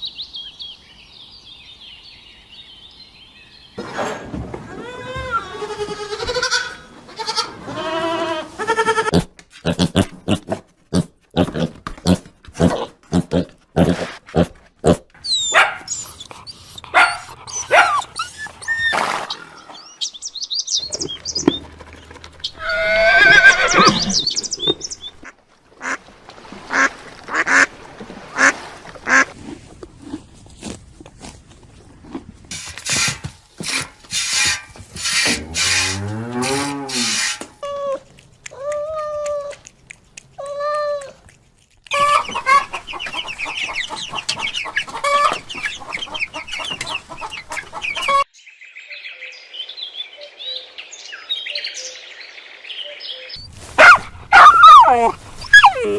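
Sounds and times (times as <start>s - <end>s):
farm animal calls: 11.4s - 20.0s, 20.8s - 26.0s, 41.9s - 48.2s, 53.7s - 55.9s.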